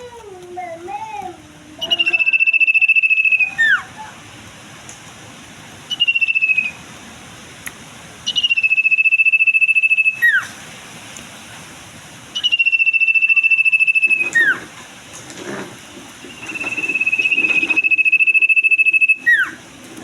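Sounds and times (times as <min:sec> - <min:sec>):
bird trilling song: 0:01.8 - 0:03.8, 0:05.9 - 0:06.8, 0:08.3 - 0:10.5, 0:12.4 - 0:14.7, 0:16.2 - 0:19.6.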